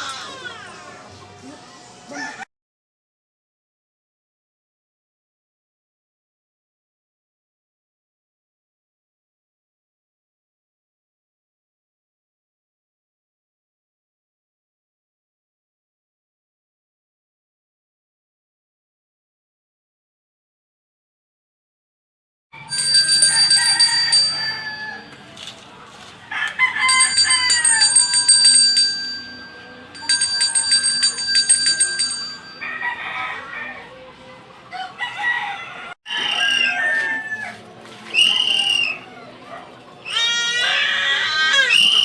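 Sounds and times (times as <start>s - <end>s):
rooster crowing: 22.6s - 25.2s, 26.3s - 29.4s, 31.0s - 34.0s, 34.7s - 37.6s.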